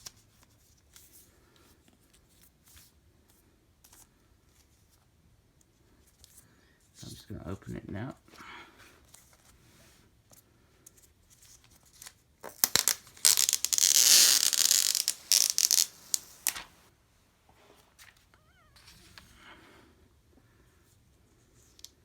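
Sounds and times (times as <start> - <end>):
plastic wrap tearing: 12.4 - 16.7
plastic wrap crackling: 12.4 - 16.9
faint wavering high cry: 18.4 - 19.1.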